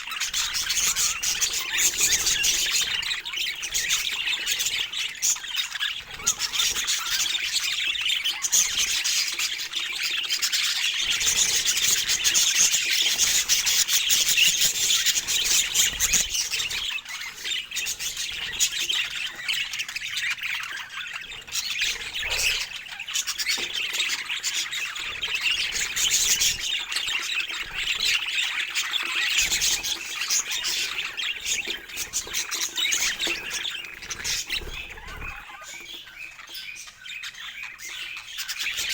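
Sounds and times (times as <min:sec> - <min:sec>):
budgerigars chattering: 0:00.0 - 0:38.9.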